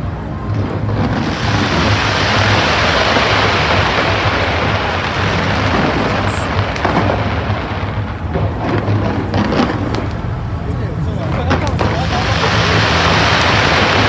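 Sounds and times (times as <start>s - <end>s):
low rumble: 0.0s - 14.0s
fireworks crackling: 0.3s - 14.0s.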